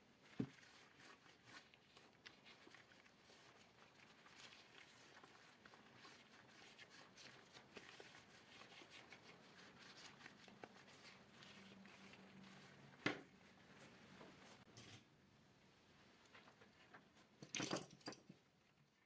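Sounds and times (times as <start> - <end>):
cloth wiping desk items: 0.0 - 15.1.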